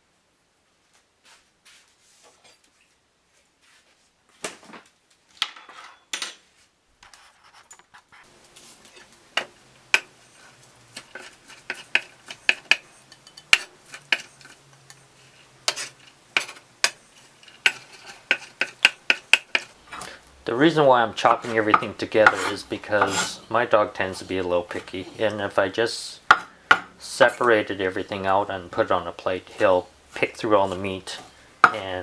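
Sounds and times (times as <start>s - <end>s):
knife chopping on cutting board: 21.4s - 23.3s, 26.3s - 27.0s, 31.1s - 31.9s.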